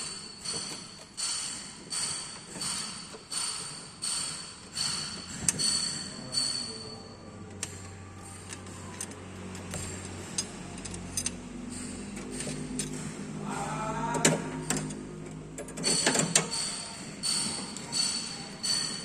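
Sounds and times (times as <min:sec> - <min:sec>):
hand tools clicking on metal: 0:00.4 - 0:13.5.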